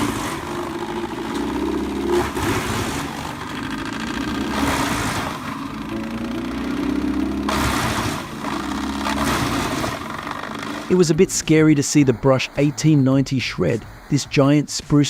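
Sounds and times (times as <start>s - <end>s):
rough noise of wood chipping: 0.0s - 11.0s
wood chipper engine running: 0.0s - 12.6s.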